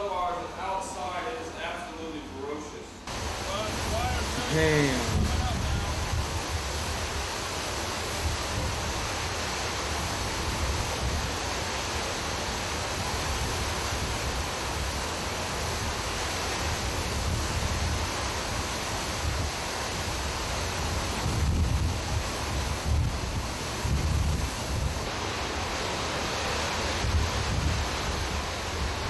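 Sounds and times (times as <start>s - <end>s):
wind buffeting microphone: 3.2s - 9.4s, 16.8s - 25.1s, 27.0s - 29.0s.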